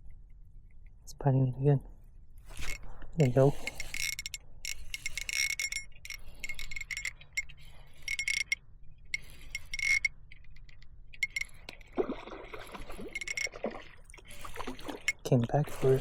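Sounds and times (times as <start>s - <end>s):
fishing reel clicking: 2.4s - 12.0s, 12.7s - 16.0s.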